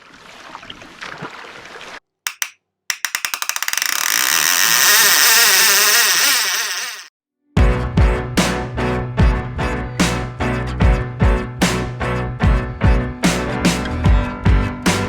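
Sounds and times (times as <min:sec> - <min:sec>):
fishing reel drag clicking and whining: 0:02.3 - 0:07.1.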